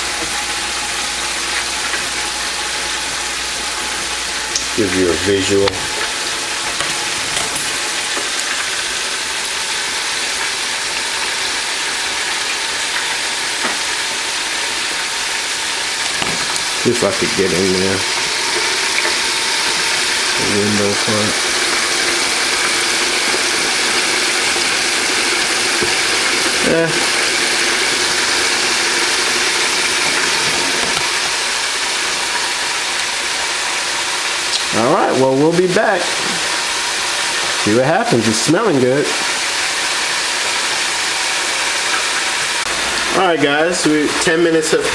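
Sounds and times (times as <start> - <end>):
chicken frying in deep fryer: 0.0 - 44.9.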